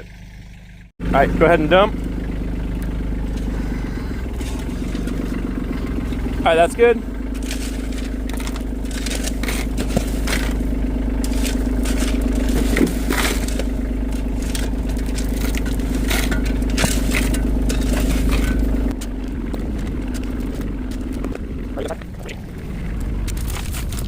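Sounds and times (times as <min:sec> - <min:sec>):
skid steer engine running: 0:00.0 - 0:24.0
shovel scraping into gravel: 0:03.4 - 0:05.3, 0:07.3 - 0:18.9, 0:23.3 - 0:24.0.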